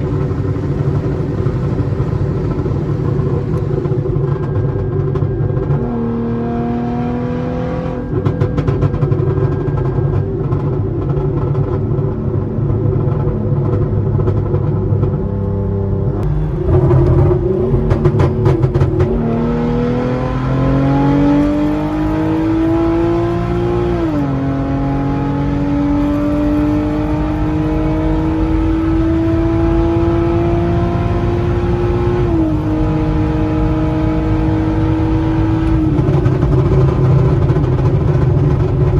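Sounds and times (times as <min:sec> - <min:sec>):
car engine accelerating: 0:00.0 - 0:38.9
crackling exhaust pops: 0:35.4 - 0:38.9.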